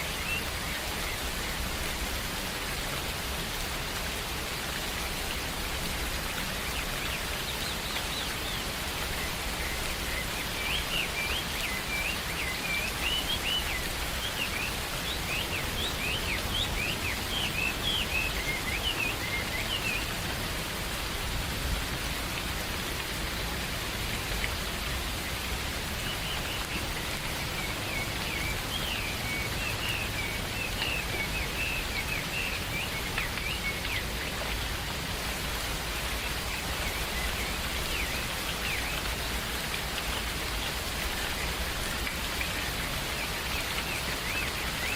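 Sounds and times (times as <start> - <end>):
steady rain falling: 0.0 - 44.9
birds chirping rapidly: 6.4 - 20.3.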